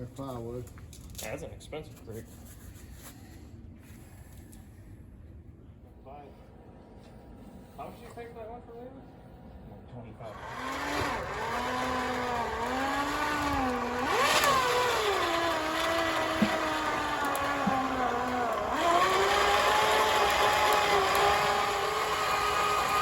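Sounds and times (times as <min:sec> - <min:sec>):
engine running and revving: 0:10.3 - 0:23.0.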